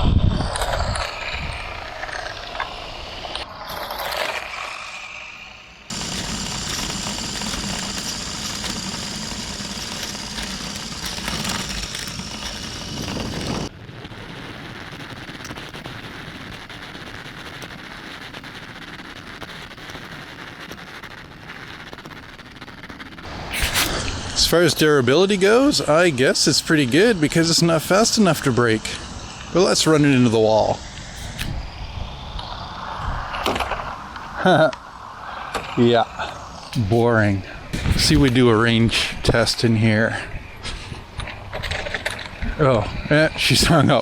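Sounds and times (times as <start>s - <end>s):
toy car electric motor whining: 0.2s - 13.7s
plastic tyres rattling over pavement: 5.9s - 13.7s.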